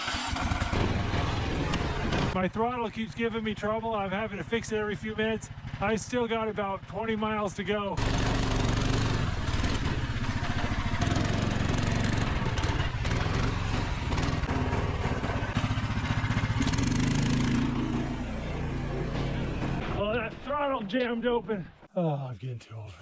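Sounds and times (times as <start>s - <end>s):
small gasoline engine running: 0.0s - 2.4s, 8.0s - 18.8s.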